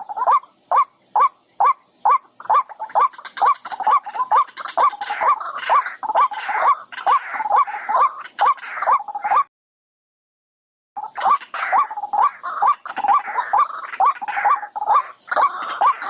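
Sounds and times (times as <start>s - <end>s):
bird calling: 0.0s - 9.5s, 11.0s - 16.0s
harsh rasping bird calls: 0.0s - 9.5s, 11.0s - 16.0s.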